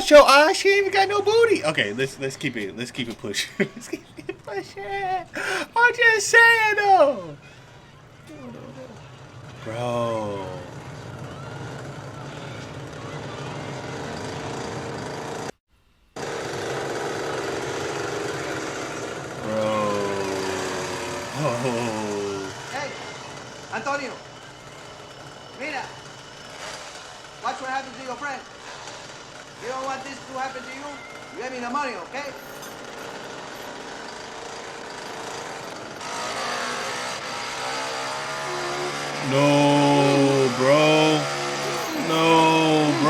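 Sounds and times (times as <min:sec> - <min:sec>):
busy street noise: 0:00.0 - 0:15.5, 0:16.3 - 0:43.0
chainsaw engine buzzing: 0:16.2 - 0:29.9, 0:32.3 - 0:43.0
held tone sliding down: 0:39.7 - 0:43.0.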